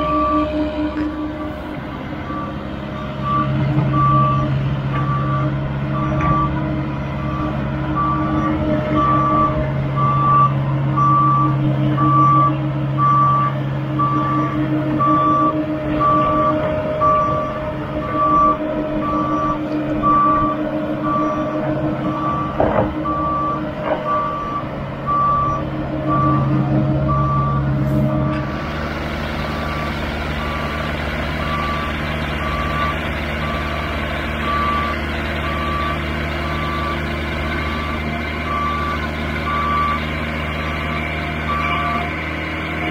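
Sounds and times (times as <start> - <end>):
backup alarm beeping: 2.2 - 6.6, 7.2 - 28.3, 29.8 - 33.8, 34.4 - 37.0.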